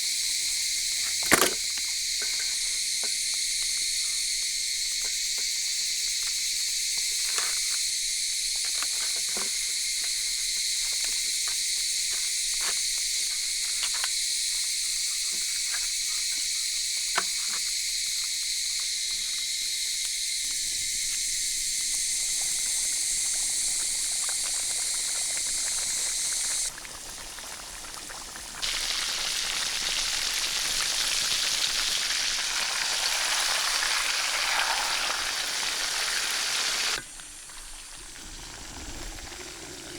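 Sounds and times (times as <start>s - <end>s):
insects chorus: 0.0s - 39.9s
hot oil sizzling: 20.9s - 39.9s.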